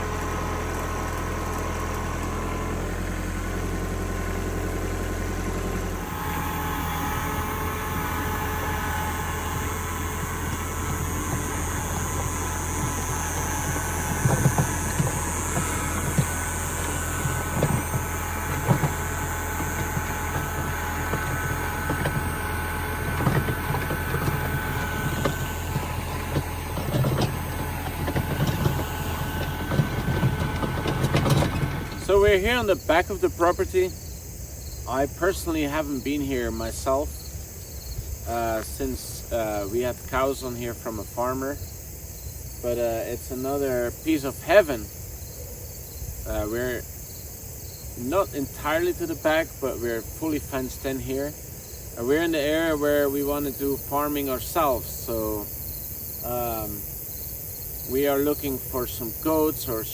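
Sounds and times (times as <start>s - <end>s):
vehicle engine running: 0.0s - 57.0s
knocks and rattles: 8.7s - 32.3s.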